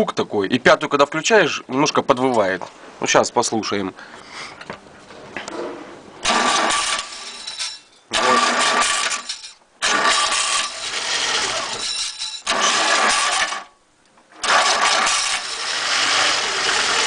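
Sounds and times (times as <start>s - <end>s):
engine cranking by starter motor: 6.2s - 13.7s, 14.3s - 17.0s.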